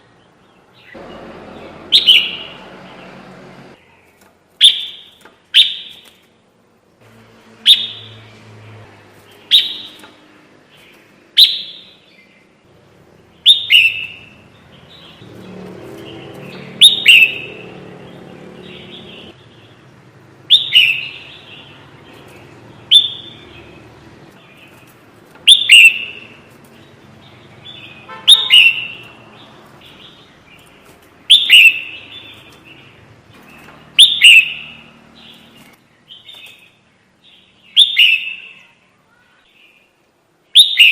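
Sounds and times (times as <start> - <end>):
bulbul calls: 16.4 - 17.6, 22.9 - 23.6, 25.4 - 26.3, 27.6 - 29.1, 31.3 - 32.4, 33.9 - 35.4.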